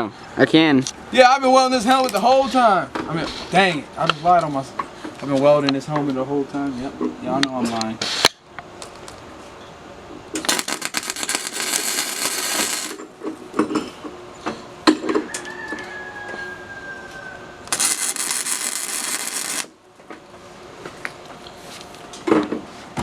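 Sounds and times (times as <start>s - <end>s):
arc welding crackling: 10.3s - 13.3s, 17.7s - 19.8s.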